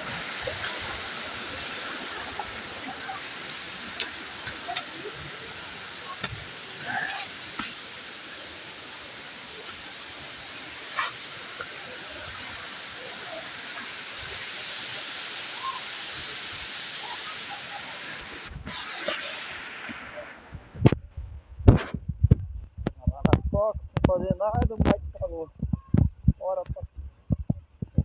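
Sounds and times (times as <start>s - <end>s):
waterfall rushing: 0.0s - 20.6s.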